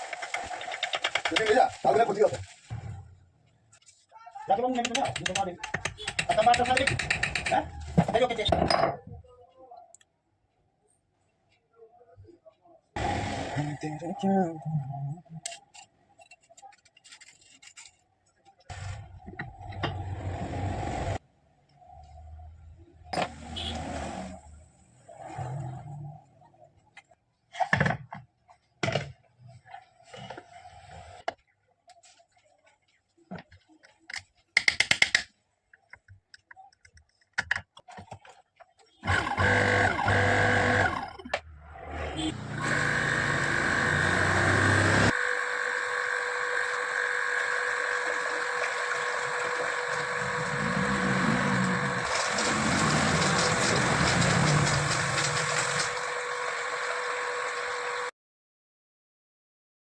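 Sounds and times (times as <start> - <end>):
electric water pump whining: 39.0 - 41.5, 42.2 - 58.1
water rushing: 48.0 - 57.1.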